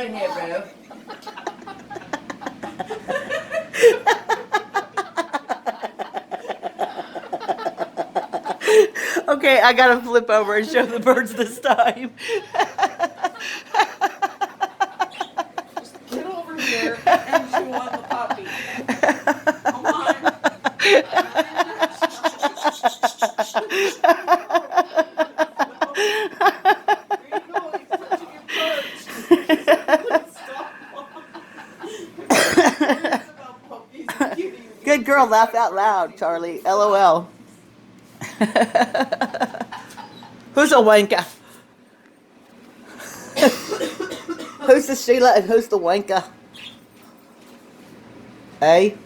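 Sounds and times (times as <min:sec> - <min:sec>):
rhythmic laughter: 0:00.8 - 0:09.2, 0:11.2 - 0:33.3, 0:38.2 - 0:40.4
parrot imitating laughter: 0:14.9 - 0:15.6.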